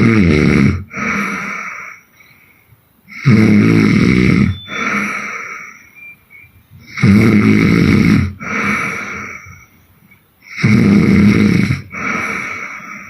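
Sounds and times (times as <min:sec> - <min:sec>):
woman snoring: 0:00.0 - 0:02.0, 0:03.1 - 0:05.9, 0:06.8 - 0:09.7, 0:10.4 - 0:13.0
breathy sleep breathing: 0:00.0 - 0:13.0.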